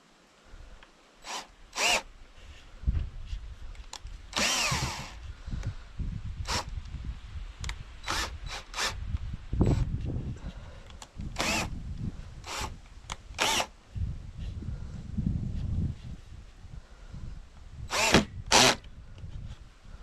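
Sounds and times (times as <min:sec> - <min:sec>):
power drill bursts: 0:01.2 - 0:02.1, 0:04.3 - 0:05.2, 0:06.4 - 0:06.7, 0:08.0 - 0:09.0, 0:11.4 - 0:11.7, 0:12.4 - 0:13.7, 0:17.9 - 0:18.8.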